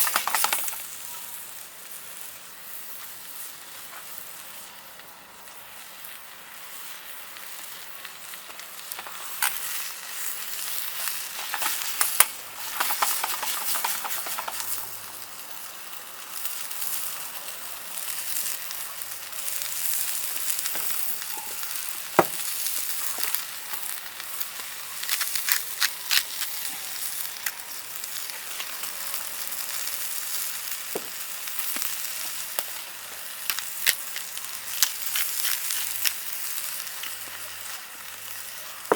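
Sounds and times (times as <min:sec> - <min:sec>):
utensil clicking and scraping: 0:00.0 - 0:00.8, 0:10.6 - 0:15.0, 0:25.0 - 0:27.6
food sizzling in a pan: 0:00.0 - 0:38.9.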